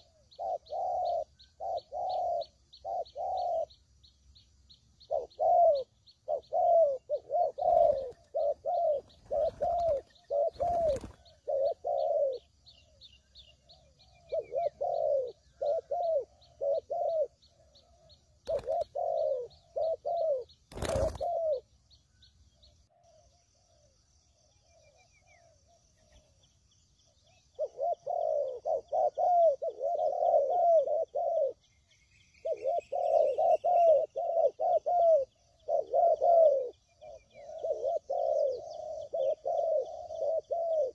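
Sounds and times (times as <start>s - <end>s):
doves cooing: 0.0s - 3.8s, 5.0s - 21.7s, 27.3s - 31.7s, 32.4s - 40.9s
high insect trill: 0.3s - 13.0s.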